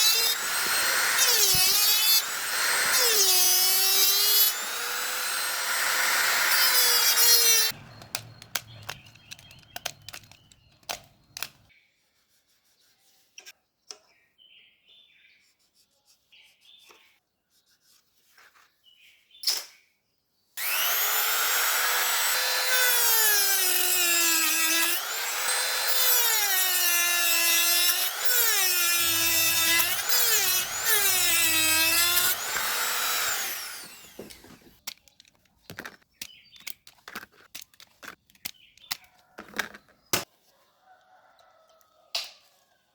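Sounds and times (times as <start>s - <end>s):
electric drill whining: 0.0s - 10.5s, 20.6s - 34.8s.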